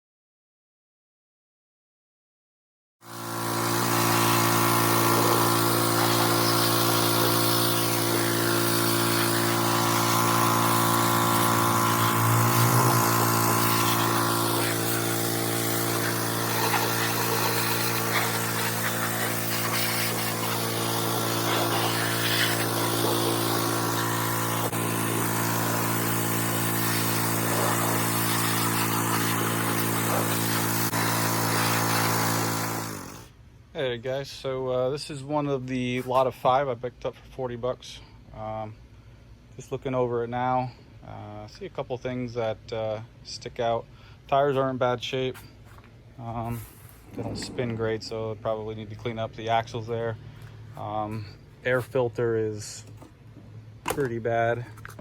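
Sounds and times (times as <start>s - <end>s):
lawn mower engine running: 3.1s - 33.3s.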